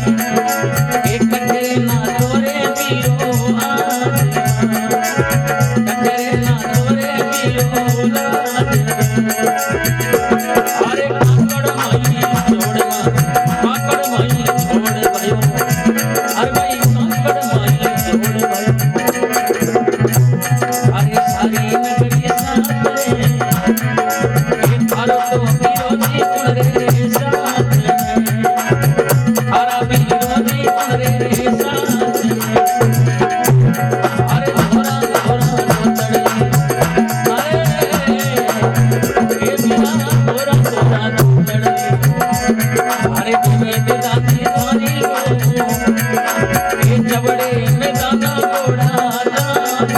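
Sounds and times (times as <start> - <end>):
fast hand-drum beat: 0.0 - 49.9
instrumental folk melody: 0.0 - 49.9.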